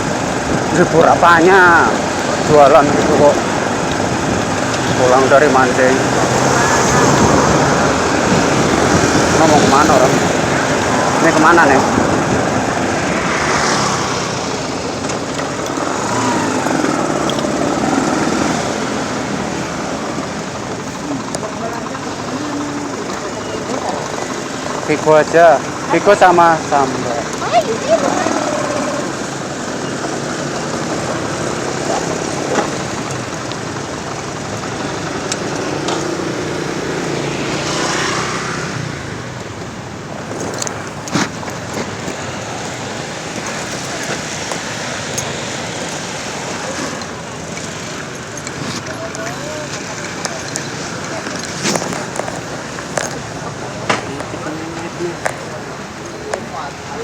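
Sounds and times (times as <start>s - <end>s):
motorbike engine running: 14.4s - 39.3s, 40.1s - 56.6s.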